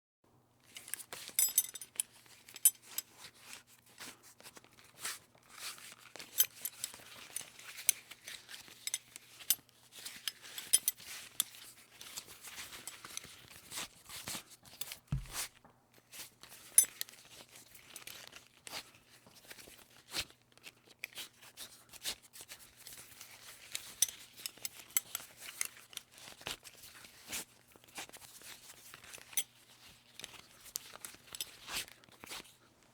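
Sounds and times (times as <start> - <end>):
metal buckle clicking and clinking: 0.7 - 3.1, 6.2 - 13.4, 16.8 - 17.2, 23.8 - 26.2.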